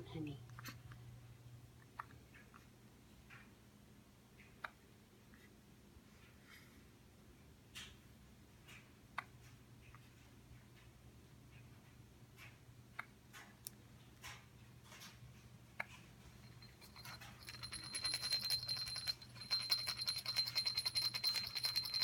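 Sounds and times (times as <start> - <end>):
rapid metallic jingling: 16.4 - 22.0
steady high ringing: 16.4 - 22.0.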